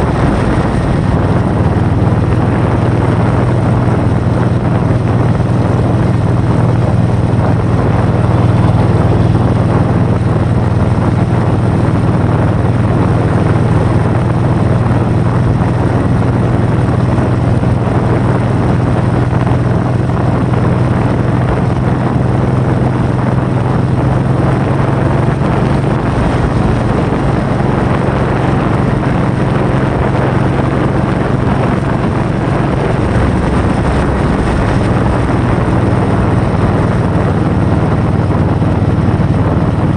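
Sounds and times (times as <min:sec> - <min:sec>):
loud wind noise: 0:00.0 - 0:39.9
low hum: 0:00.0 - 0:39.9.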